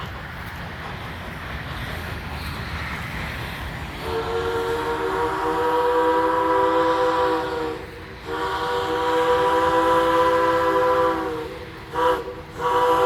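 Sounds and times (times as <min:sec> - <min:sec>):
locomotive horn blasts: 0:04.0 - 0:13.0.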